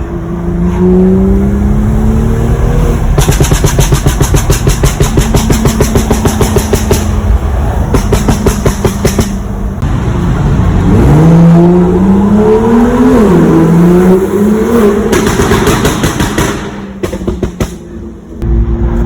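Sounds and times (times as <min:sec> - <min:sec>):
car engine accelerating hard: 0:00.0 - 0:04.2, 0:09.8 - 0:15.9
exhaust crackling and popping: 0:03.0 - 0:09.9.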